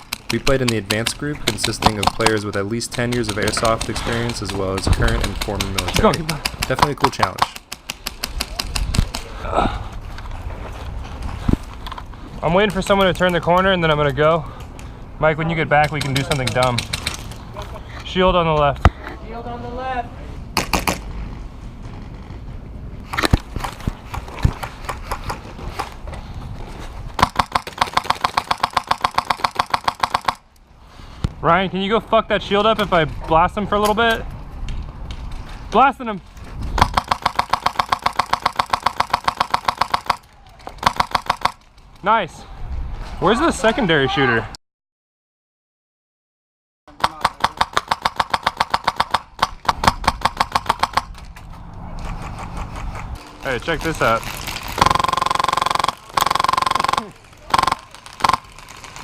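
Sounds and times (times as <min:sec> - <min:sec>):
single airsoft shots: 0:20.6 - 0:21.0, 0:47.0 - 0:51.2
airsoft rifle full-auto burst: 0:27.2 - 0:30.4, 0:36.8 - 0:40.2, 0:40.8 - 0:41.6, 0:47.0 - 0:51.1, 0:54.7 - 0:59.0.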